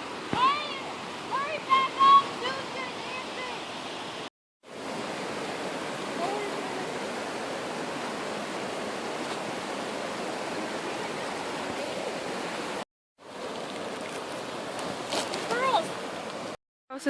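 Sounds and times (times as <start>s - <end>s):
stream rushing: 0.0s - 16.6s.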